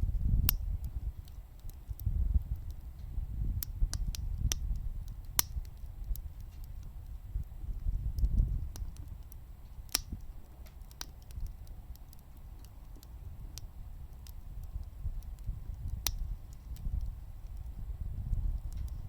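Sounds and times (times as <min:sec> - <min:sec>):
firewood crackling and popping: 0:00.0 - 0:19.0
low stove rumble: 0:00.0 - 0:19.0.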